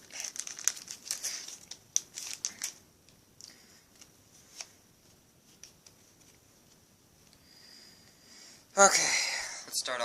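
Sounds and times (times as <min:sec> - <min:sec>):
foil wrapper crinkling: 0:00.0 - 0:02.8
cards being handled: 0:00.0 - 0:03.2, 0:03.9 - 0:06.8
faint clicks and rustles: 0:00.0 - 0:07.4.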